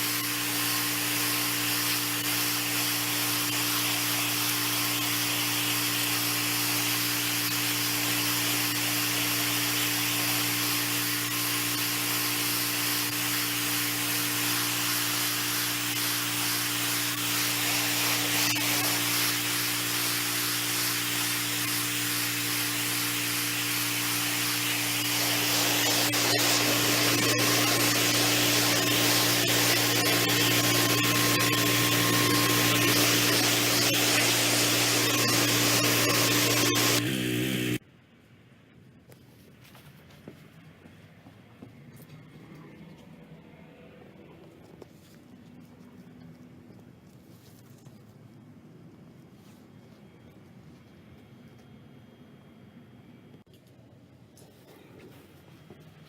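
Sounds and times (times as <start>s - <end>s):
high-pressure water spray on concrete: 0.0s - 37.6s
engine hum: 27.5s - 37.8s.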